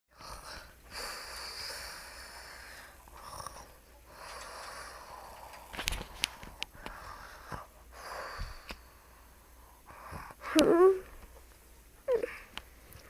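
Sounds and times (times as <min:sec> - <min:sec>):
person fake-snoring: 0:03.1 - 0:03.8.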